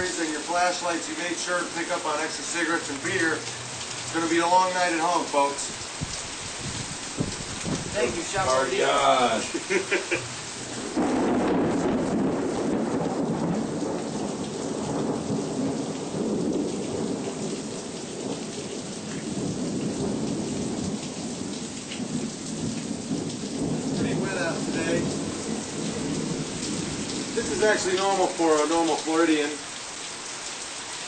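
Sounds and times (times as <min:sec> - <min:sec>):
heavy rain: 0:00.0 - 0:31.0
hurricane wind: 0:00.0 - 0:31.0
wind buffeting microphone: 0:05.7 - 0:09.6, 0:10.6 - 0:28.1.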